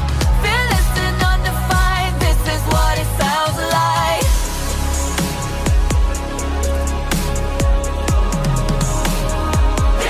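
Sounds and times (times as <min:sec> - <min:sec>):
deep kick drums: 0:00.0 - 0:03.2, 0:04.2 - 0:10.0
electronic pop music: 0:00.0 - 0:10.0.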